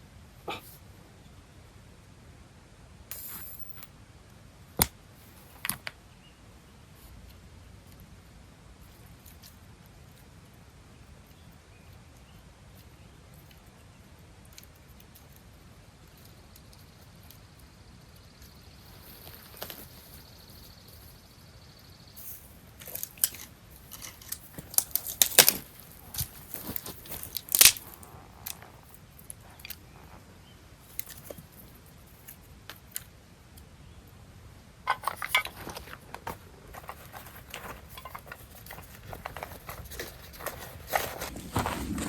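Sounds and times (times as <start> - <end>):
small objects clicking and tapping: 22.2 - 29.8.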